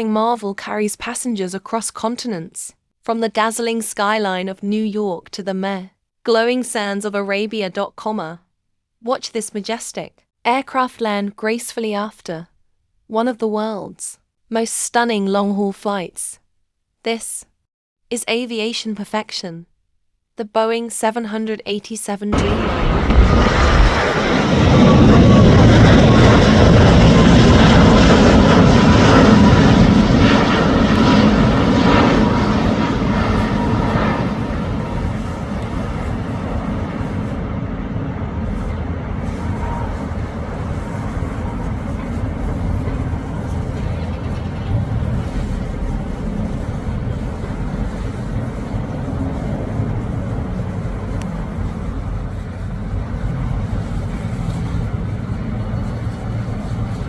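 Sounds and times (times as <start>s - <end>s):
jet engines rumbling: 22.4s - 57.0s.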